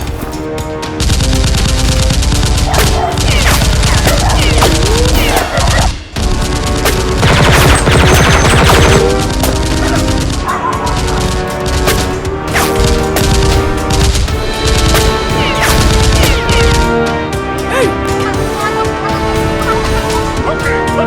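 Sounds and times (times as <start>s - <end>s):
background music: 0.0s - 21.0s
automatic gunfire: 1.0s - 16.9s.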